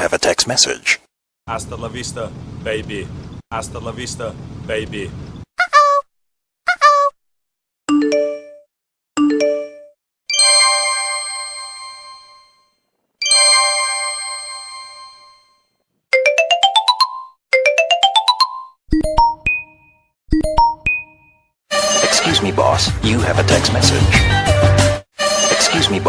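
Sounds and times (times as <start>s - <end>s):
phone notification tones: 7.9s - 8.6s, 9.2s - 12.5s, 16.2s - 21.3s.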